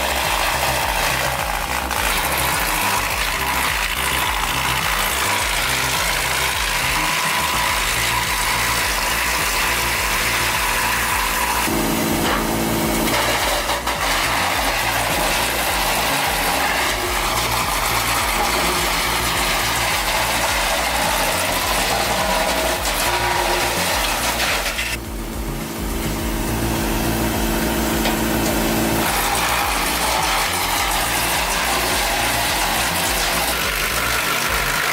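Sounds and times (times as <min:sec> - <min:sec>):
pitched whine: 0:00.0 - 0:34.7
heavy machine engine rumbling: 0:11.6 - 0:33.4.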